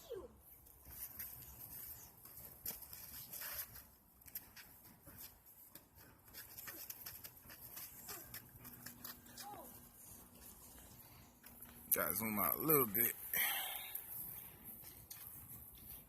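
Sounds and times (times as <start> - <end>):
dogs scuffling: 0.7 - 11.9.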